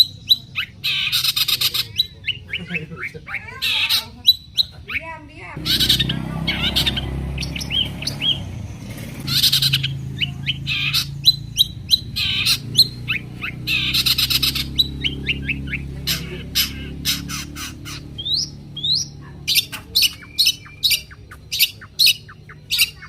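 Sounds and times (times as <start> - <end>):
bird singing sharp chirps: 0.0 - 23.0
steady low hum: 5.5 - 23.0.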